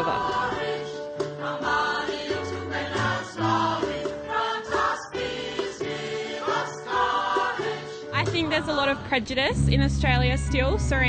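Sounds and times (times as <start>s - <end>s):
choir singing in harmony: 0.0s - 9.1s
low bass notes: 8.2s - 11.0s.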